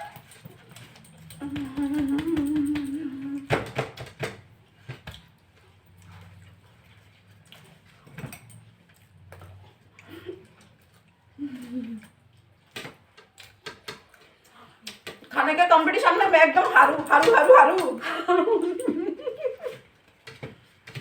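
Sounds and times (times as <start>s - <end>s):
person humming: 1.4s - 3.6s.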